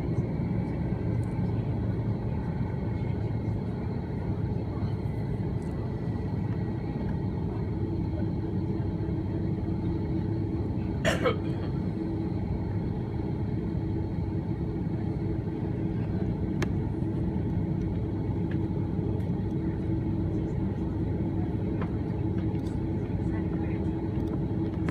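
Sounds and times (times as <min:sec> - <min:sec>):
airliner cabin rumble: 0:00.0 - 0:24.9.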